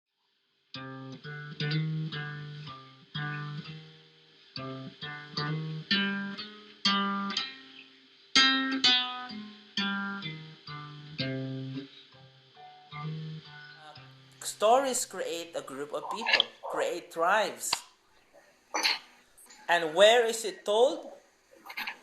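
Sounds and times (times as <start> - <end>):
guitar playing plucked notes: 0.7 - 17.8.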